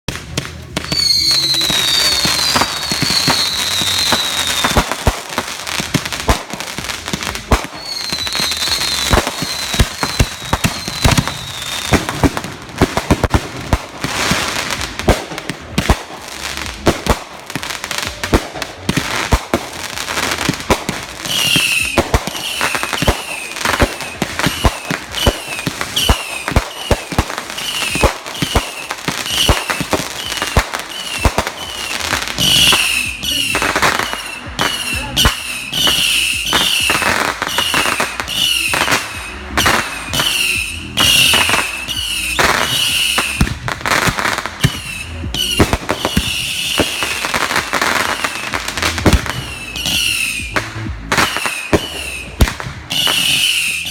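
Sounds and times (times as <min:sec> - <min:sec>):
fireworks crackling and popping: 0:00.0 - 0:53.9
high falling firework whistles: 0:07.7 - 0:12.0, 0:21.2 - 0:43.5, 0:44.6 - 0:47.3, 0:49.1 - 0:50.6, 0:51.2 - 0:53.9.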